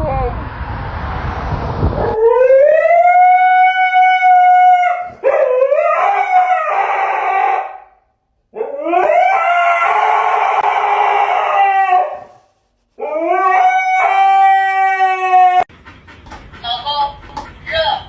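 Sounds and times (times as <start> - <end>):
rushing noise: 0.0 - 2.3
dog howling: 2.0 - 8.0, 8.6 - 15.7.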